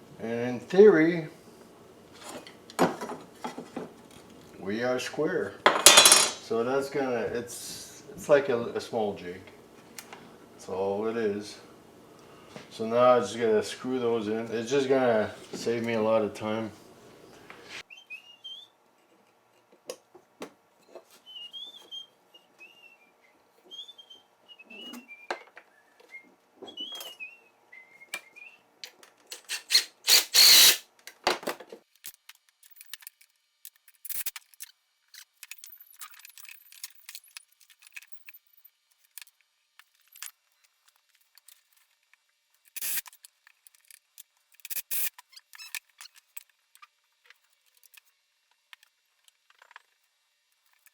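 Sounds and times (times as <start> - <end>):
hands handling wood and tools: 2.1 - 4.4, 31.0 - 50.9
man whistling a tune: 24.5 - 28.6.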